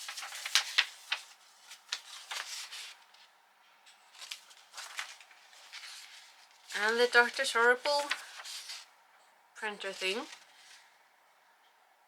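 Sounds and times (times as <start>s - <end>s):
paper rustling and crinkling: 0.0s - 3.3s, 4.1s - 8.9s, 9.8s - 11.0s.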